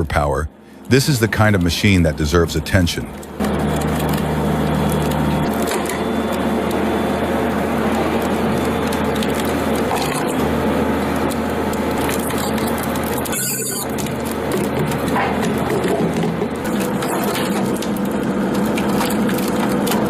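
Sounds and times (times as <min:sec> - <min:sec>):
engine and hydraulics humming: 0:00.0 - 0:20.0.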